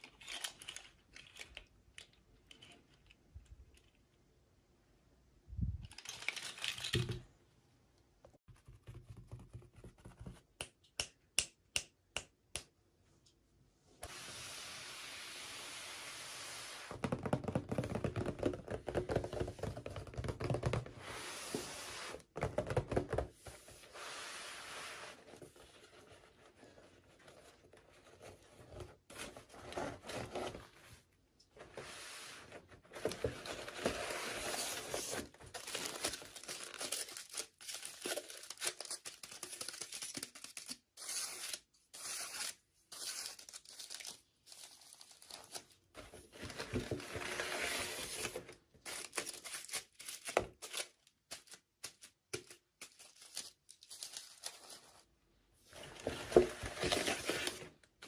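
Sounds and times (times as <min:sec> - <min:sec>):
sharp clicks of toy packaging: 0:00.0 - 0:02.7, 0:05.8 - 0:07.1
packaging rustling and crackling: 0:33.0 - 0:40.8.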